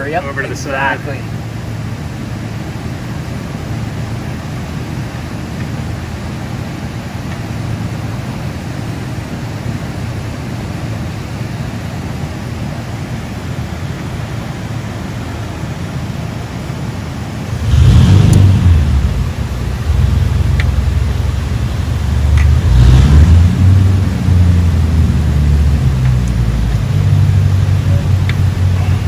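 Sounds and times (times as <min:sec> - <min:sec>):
steady rushing noise: 0:12.8 - 0:29.0
low hum: 0:17.4 - 0:29.0.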